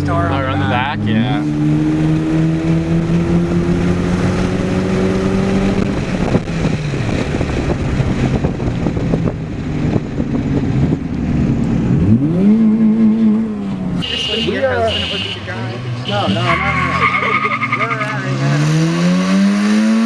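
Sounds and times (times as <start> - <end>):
car engine revving: 0.0 - 20.0
wind noise on microphone: 2.5 - 12.4.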